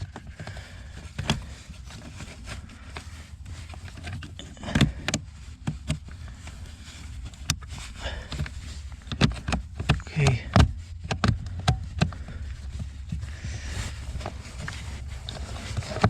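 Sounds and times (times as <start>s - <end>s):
plastic connector clicks and knocks: 9.0s - 12.2s.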